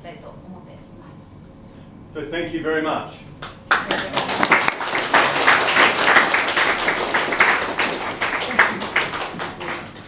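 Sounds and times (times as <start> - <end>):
audience applauding: 3.7 - 10.0.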